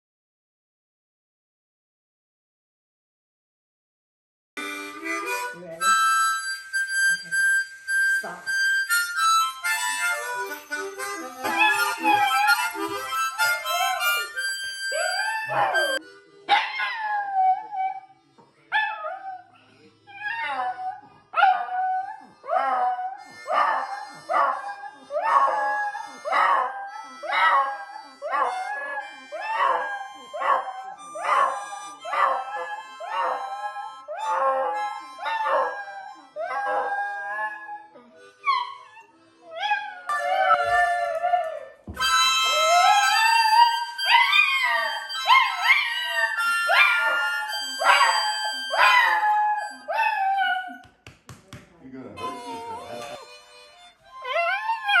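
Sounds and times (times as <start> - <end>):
sustained musical notes: 4.6 - 16.3
dog howling: 11.4 - 13.1, 14.9 - 16.0, 39.5 - 41.8, 42.5 - 50.8, 54.2 - 55.0.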